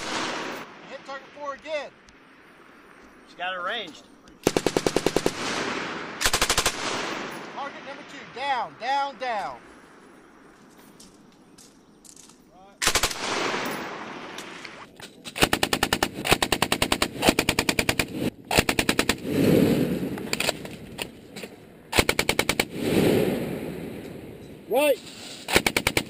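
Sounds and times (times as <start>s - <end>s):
rolling echo: 0.0s - 14.9s
machine gun bursts: 4.4s - 7.4s, 12.8s - 13.9s, 15.3s - 19.3s, 21.9s - 22.7s, 25.5s - 26.0s.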